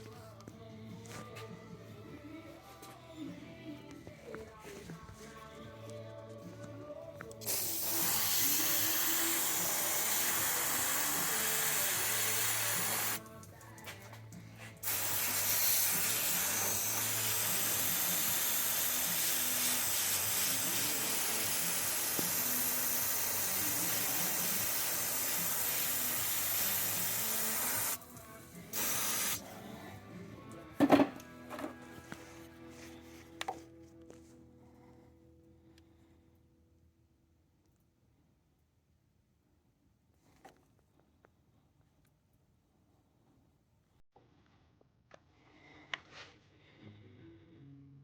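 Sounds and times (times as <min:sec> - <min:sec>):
aerosol can spraying: 0:07.4 - 0:13.2, 0:14.8 - 0:29.5.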